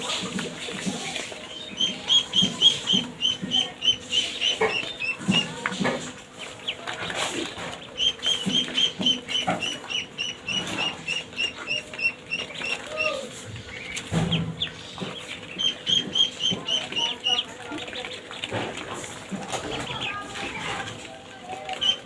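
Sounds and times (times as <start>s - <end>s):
ducklings peeping: 0.0s - 22.0s.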